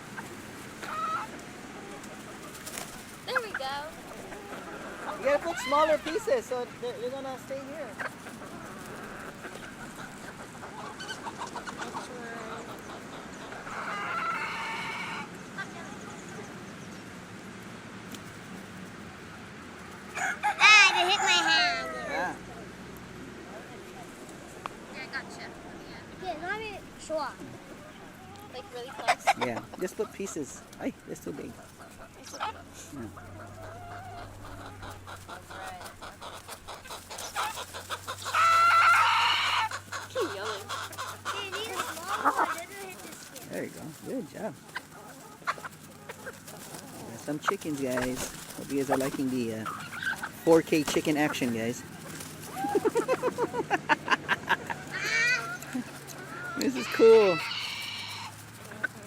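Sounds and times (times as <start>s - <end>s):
chickens clucking: 0.0s - 59.0s
chicken wavering call: 31.6s - 43.2s, 54.5s - 59.0s.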